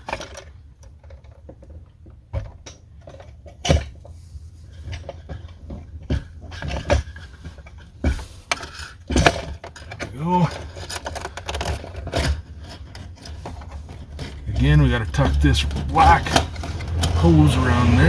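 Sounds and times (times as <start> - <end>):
hard parts clicking and knocking: 4.9 - 17.5.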